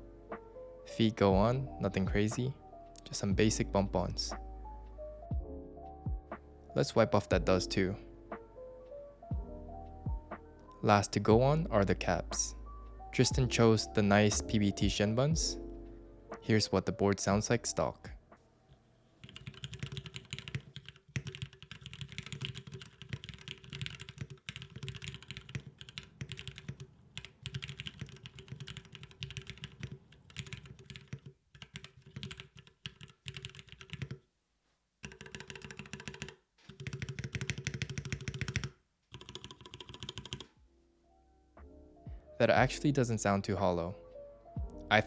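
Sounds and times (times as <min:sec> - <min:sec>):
mechanical keyboard typing: 0:19.2 - 0:34.2, 0:35.0 - 0:40.6.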